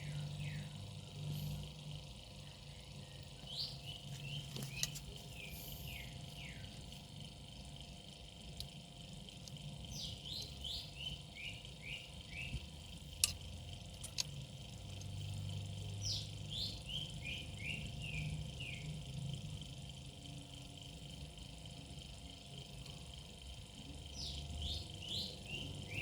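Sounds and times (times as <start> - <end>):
bird singing: 0.0 - 1.5, 2.4 - 6.9, 9.7 - 12.7, 15.2 - 19.1, 23.8 - 26.0
high-pitched insect-like whine: 0.0 - 26.0.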